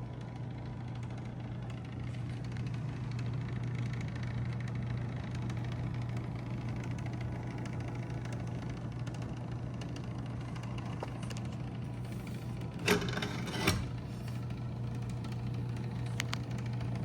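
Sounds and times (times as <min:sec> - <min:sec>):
typewriter motor humming: 0:11.9 - 0:17.0.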